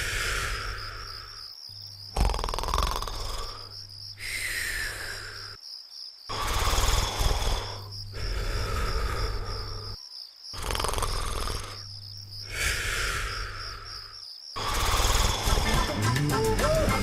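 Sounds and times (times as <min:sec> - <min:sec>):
high chirping like crickets: 0:00.0 - 0:17.0
cartoon snoring: 0:02.1 - 0:05.5, 0:06.3 - 0:16.1.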